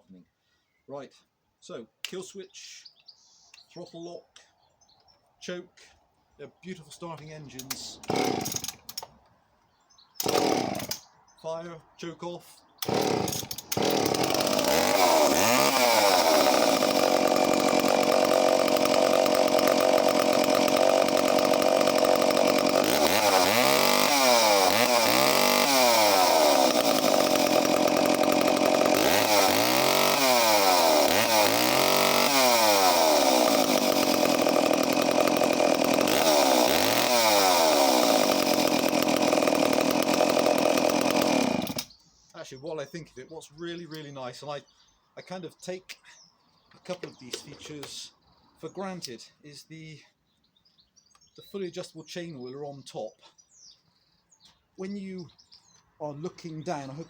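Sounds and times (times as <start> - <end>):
chainsaw idling and revving: 7.5 - 9.2, 10.2 - 11.1, 12.8 - 42.0, 46.9 - 48.0.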